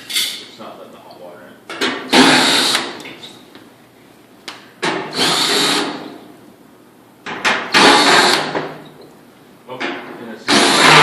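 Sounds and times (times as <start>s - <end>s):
power drill whirring: 2.1s - 2.9s, 5.1s - 6.1s, 7.7s - 8.6s, 10.5s - 11.0s.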